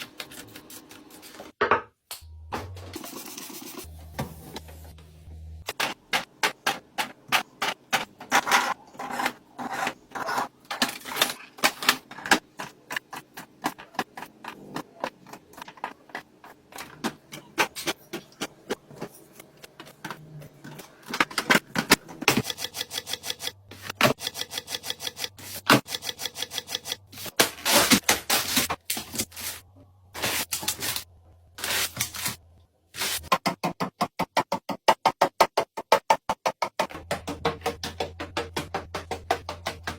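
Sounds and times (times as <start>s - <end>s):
packaging crinkling: 31.6s - 32.4s.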